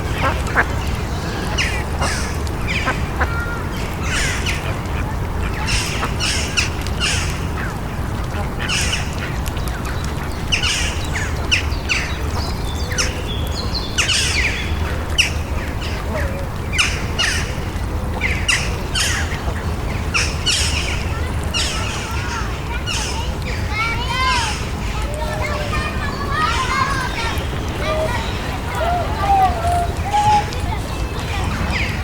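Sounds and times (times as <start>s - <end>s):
birds chirping and squawking: 0.0s - 32.0s
steady low rumble: 0.0s - 32.0s.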